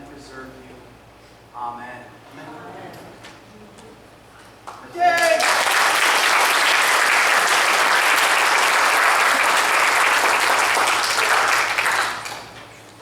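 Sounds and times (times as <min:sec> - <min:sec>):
congregation clapping: 0:04.6 - 0:12.8.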